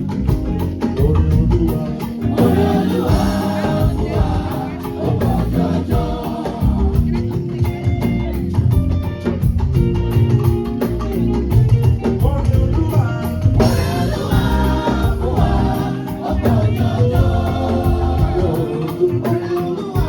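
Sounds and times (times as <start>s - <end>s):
live band playing: 0.0s - 20.0s
steady drum beat: 0.0s - 20.0s
choir singing: 1.7s - 7.5s, 13.6s - 20.0s.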